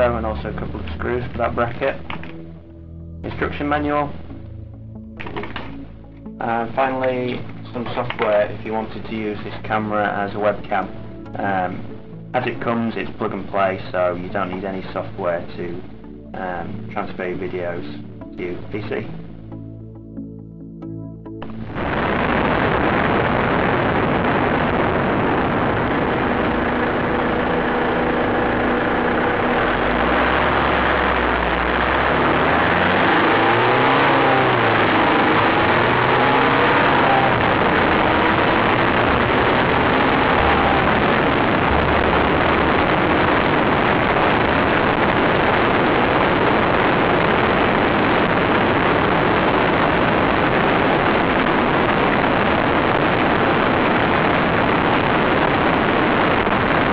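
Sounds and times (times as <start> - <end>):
road noise: 21.4 - 52.0
vehicle engine: 21.4 - 54.0.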